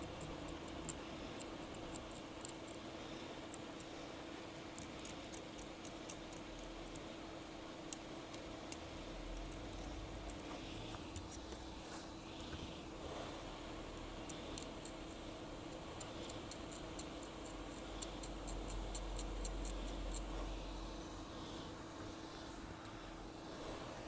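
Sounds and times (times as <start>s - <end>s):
steady electrical hum: 0.0s - 24.0s.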